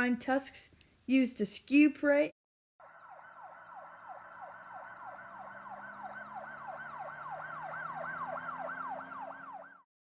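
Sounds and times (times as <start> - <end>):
low vehicle hum: 2.8 - 9.7
emergency vehicle siren wailing: 2.8 - 9.9.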